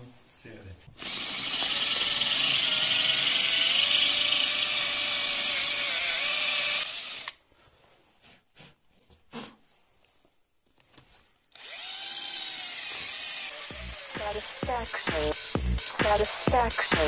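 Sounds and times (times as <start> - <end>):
power drill boring into stone: 1.0 - 7.4, 11.6 - 14.2.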